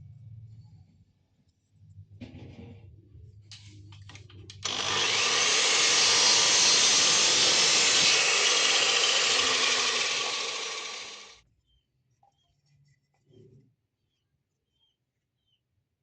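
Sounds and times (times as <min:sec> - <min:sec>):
electric power tool running: 0:04.6 - 0:11.4.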